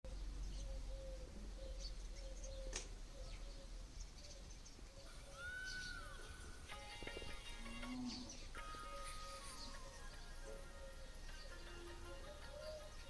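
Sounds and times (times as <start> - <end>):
sharp click: 2.7 - 3.0
arched bird call: 5.0 - 6.8, 7.6 - 13.0
high bird chirps: 5.0 - 7.1.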